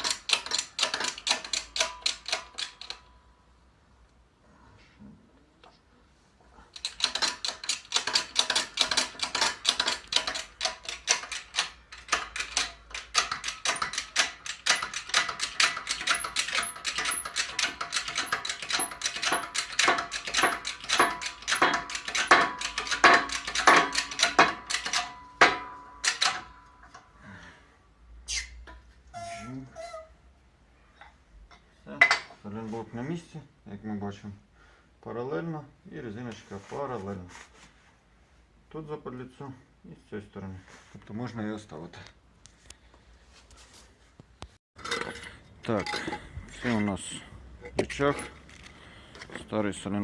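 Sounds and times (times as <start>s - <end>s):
ratchet wrench clicking: 0.0s - 3.0s, 6.8s - 25.1s.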